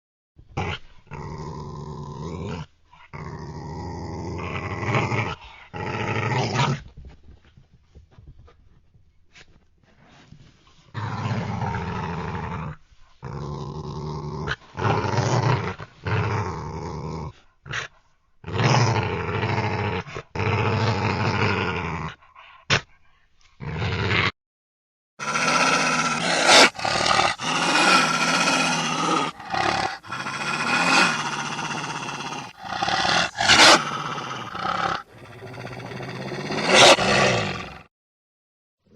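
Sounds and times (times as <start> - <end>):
wolf growling and snarling: 0.6 - 6.8, 10.9 - 22.4, 23.6 - 24.4, 25.2 - 37.9.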